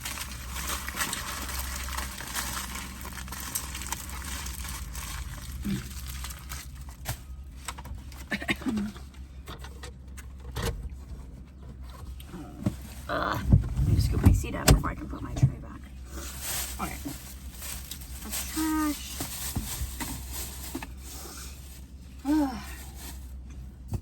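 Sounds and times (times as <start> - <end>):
rustling of wrappers and containers: 0.0 - 9.2, 16.0 - 23.9.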